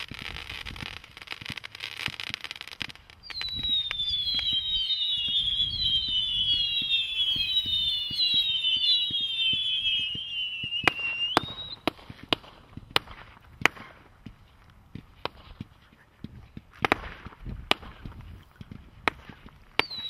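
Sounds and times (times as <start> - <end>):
sharp firework bangs: 0.0 - 14.1
firework crackle: 0.0 - 20.0
firework whistles falling in pitch: 3.2 - 12.0, 19.8 - 20.0.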